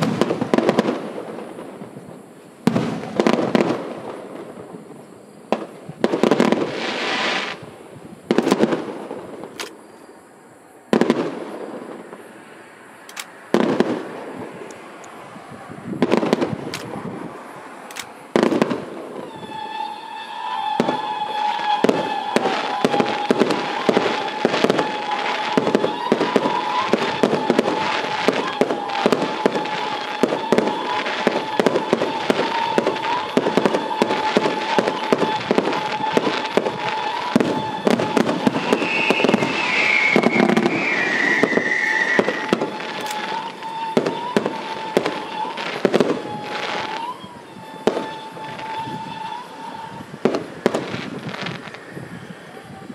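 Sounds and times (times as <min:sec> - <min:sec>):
rapid barrage of firework bangs: 0:00.0 - 0:09.5, 0:13.5 - 0:14.6, 0:15.8 - 0:17.4, 0:18.2 - 0:52.2
fireworks bursting and crackling: 0:00.0 - 0:52.9
steady high tone: 0:36.9 - 0:44.0.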